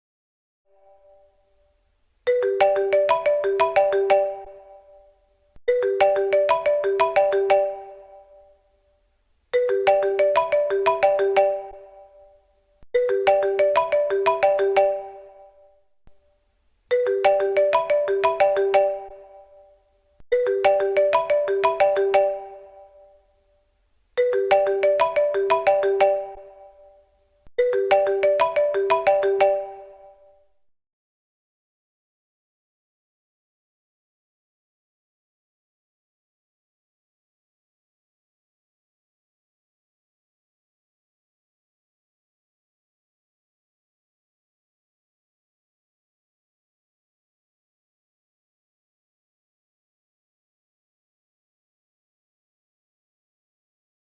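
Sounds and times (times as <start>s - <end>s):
phone ringtone: 2.3s - 5.0s, 5.7s - 8.5s, 9.6s - 12.3s, 13.0s - 15.6s, 16.9s - 19.7s, 20.3s - 23.2s, 24.2s - 27.0s, 27.6s - 30.4s.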